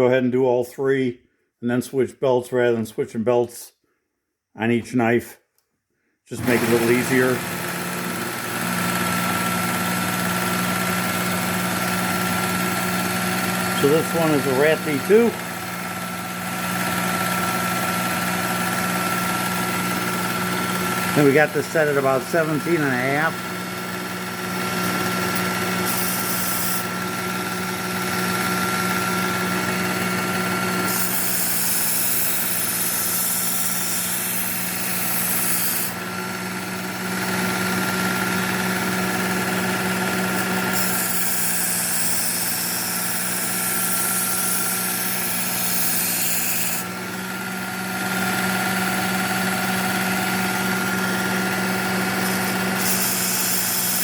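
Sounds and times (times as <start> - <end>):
sharpener motor humming: 6.4 - 54.0
knife grinding on belt: 25.3 - 26.8, 52.2 - 54.0.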